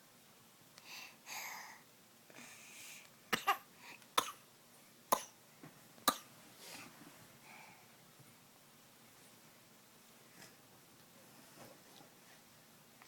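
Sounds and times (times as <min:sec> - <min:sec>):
child fake coughing: 0:03.4 - 0:04.4.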